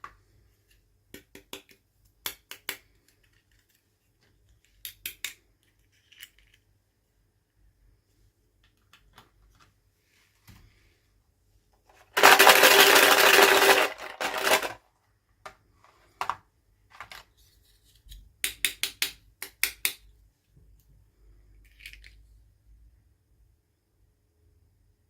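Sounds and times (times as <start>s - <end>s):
small plastic parts clicking: 1.2s - 6.7s, 21.6s - 22.2s.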